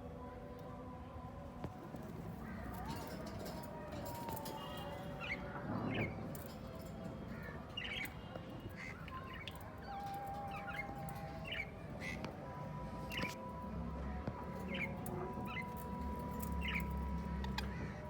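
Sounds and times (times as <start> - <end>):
parrots calling: 7.3 - 12.4, 14.6 - 18.0.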